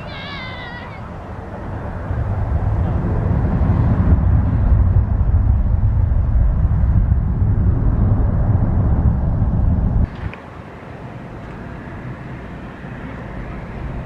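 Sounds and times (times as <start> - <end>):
jet engines rumbling: 0.0 - 14.0.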